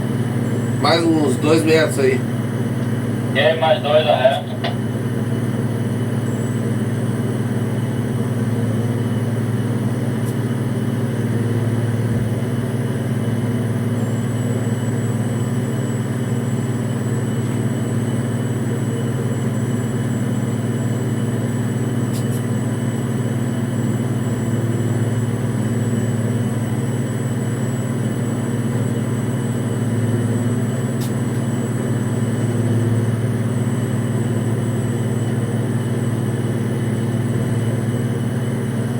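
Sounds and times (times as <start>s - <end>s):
heavy machinery droning: 0.0s - 38.9s
faint high whine: 0.2s - 11.8s.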